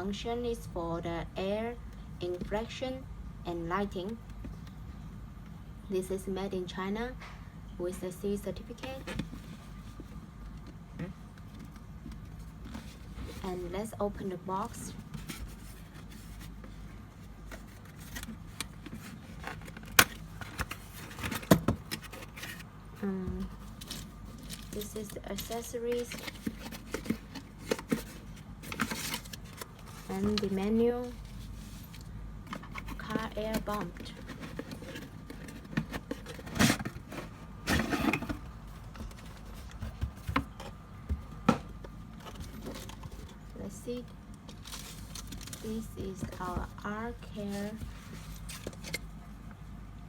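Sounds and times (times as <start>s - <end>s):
low steady hum: 0.0s - 50.0s
cardboard box rustling and knocks: 17.4s - 22.6s, 26.0s - 41.8s.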